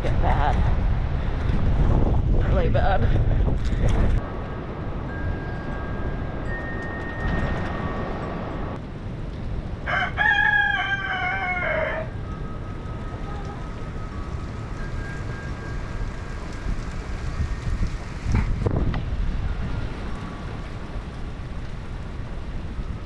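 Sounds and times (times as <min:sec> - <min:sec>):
rooster crowing: 0:09.8 - 0:12.2.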